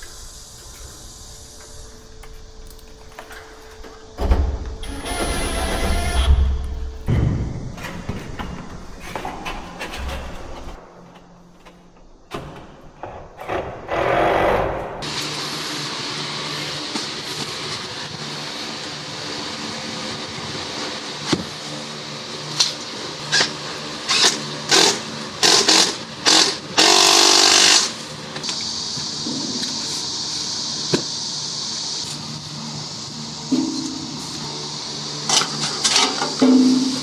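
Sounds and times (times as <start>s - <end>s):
steady mechanical hum: 0.0s - 37.0s.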